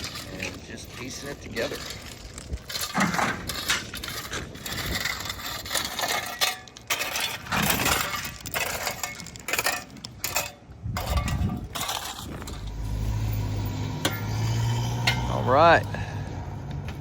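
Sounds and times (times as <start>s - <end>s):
river rocks clinking and scraping: 0.0s - 13.4s.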